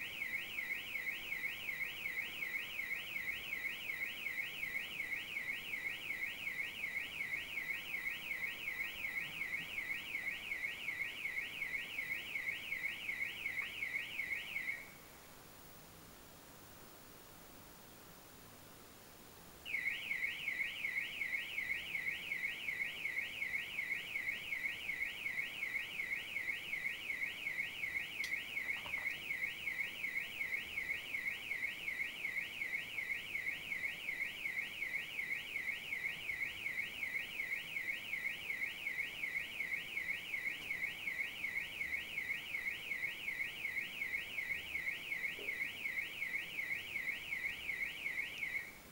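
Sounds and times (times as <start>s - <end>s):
car alarm siren warbling: 0.0s - 15.0s, 19.7s - 48.8s.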